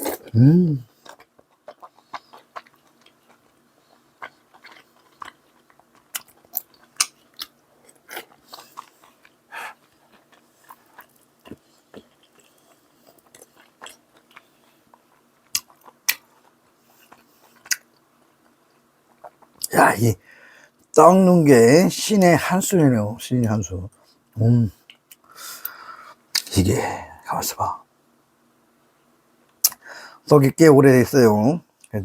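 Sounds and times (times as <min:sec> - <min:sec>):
person chewing and crunching: 0:00.0 - 0:19.7.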